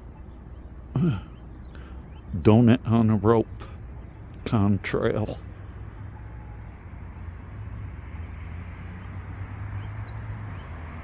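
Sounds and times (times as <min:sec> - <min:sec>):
steady low rumble: 0:00.0 - 0:08.0
faint bird chirps: 0:00.0 - 0:10.8.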